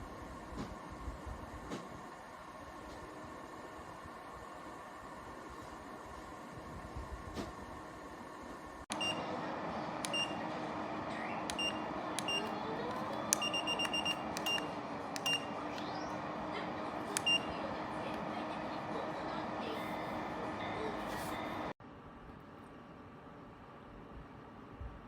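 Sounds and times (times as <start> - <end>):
heater fan whirring: 0.0 - 25.0
short high beeps: 13.4 - 15.5.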